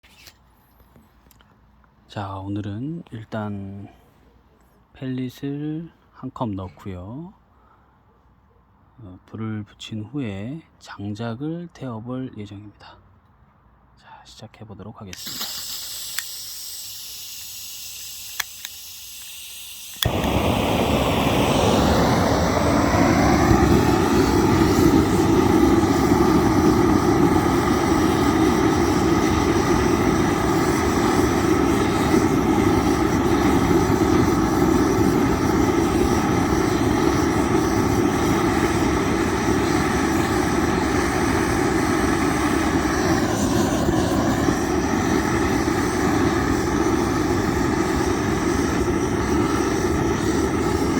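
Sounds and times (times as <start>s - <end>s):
fire-lighting tool roaring: 15.1s - 50.9s.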